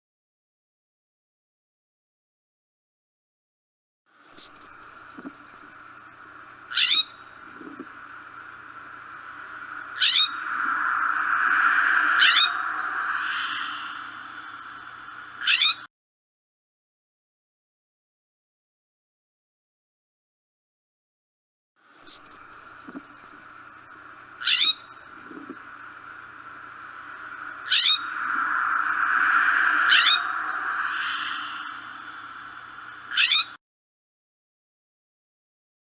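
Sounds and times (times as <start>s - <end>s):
background hiss: 4.3s - 15.4s, 22.0s - 33.2s
scrub-jay calls: 6.7s - 7.2s, 8.4s - 14.7s, 15.4s - 15.8s, 24.4s - 25.0s, 26.3s - 33.6s
jay harsh rasping calls: 27.6s - 28.2s.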